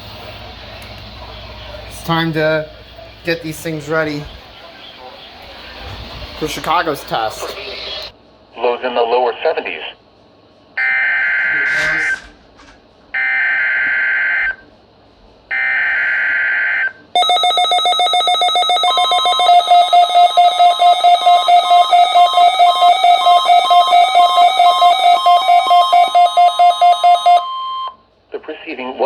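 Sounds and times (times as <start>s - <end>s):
fast beeping alarm: 17.2s - 27.9s
steady warning alarm tone: 17.2s - 28.0s
buzzing digital header bursts: 19.5s - 27.4s.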